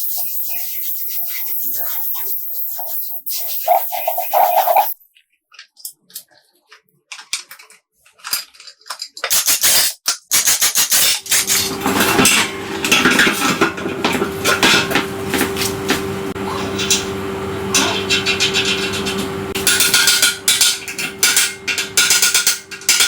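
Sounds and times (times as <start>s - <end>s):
motor humming: 11.3s - 23.0s.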